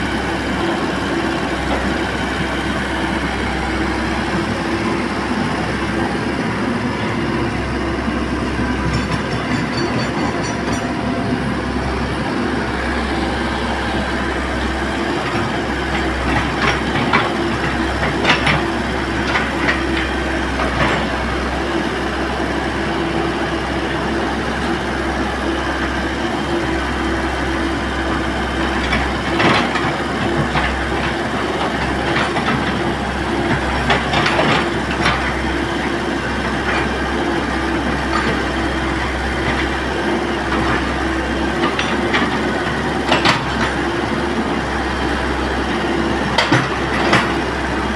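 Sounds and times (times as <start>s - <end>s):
excavator diesel engine droning: 0.0s - 47.9s
metallic clanks and knocks: 8.8s - 11.0s.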